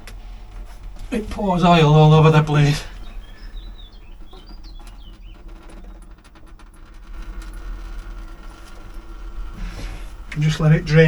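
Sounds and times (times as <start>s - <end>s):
steady low hum: 0.0s - 11.0s
small bird chirping: 1.6s - 6.2s.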